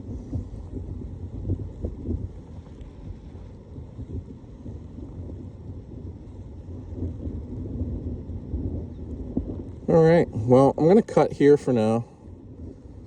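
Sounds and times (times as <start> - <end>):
wind buffeting the microphone: 0.0 - 13.0.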